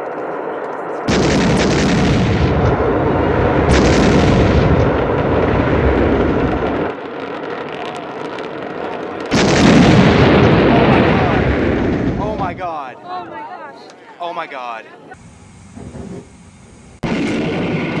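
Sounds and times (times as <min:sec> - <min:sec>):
loud explosion blast: 0:01.1 - 0:12.7, 0:17.0 - 0:18.0.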